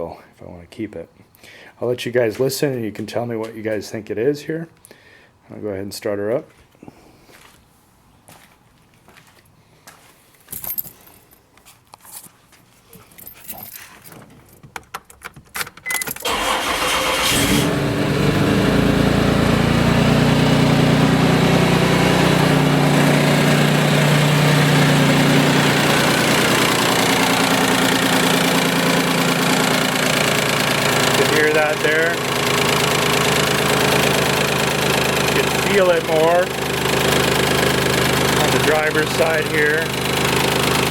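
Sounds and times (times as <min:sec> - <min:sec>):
engine cranking and starting: 0:16.0 - 0:40.9
engine idling: 0:16.3 - 0:40.9.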